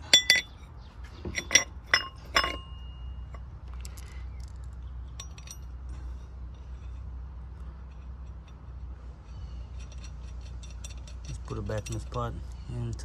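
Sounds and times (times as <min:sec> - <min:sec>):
metal tool clinking: 0:00.0 - 0:00.6, 0:01.2 - 0:03.4, 0:05.2 - 0:05.7, 0:09.7 - 0:12.3
light clicks of metal parts: 0:00.0 - 0:13.0
steady low hum: 0:00.0 - 0:13.0.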